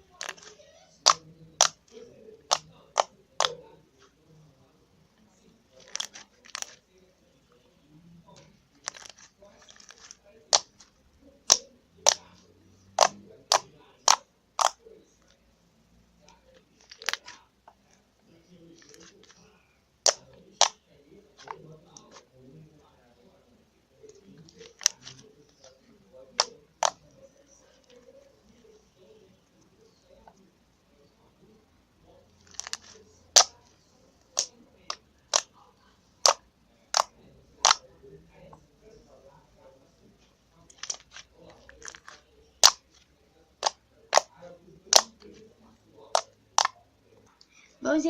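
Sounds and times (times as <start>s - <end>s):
slime squeezed popping: 13.0s - 14.8s, 36.2s - 37.8s, 41.8s - 42.8s
slime squished by hand popping: 41.8s - 42.8s.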